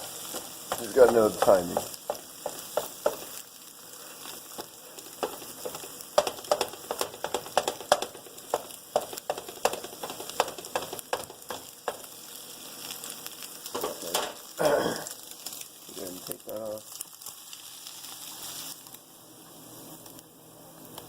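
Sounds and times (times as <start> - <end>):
eggs sizzling in a pan: 0.0 - 21.0.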